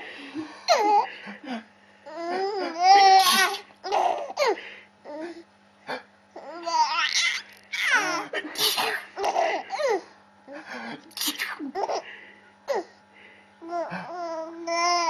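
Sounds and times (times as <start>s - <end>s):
baby laughing: 0.7s - 1.1s, 2.1s - 4.6s, 6.4s - 10.0s, 11.2s - 12.0s.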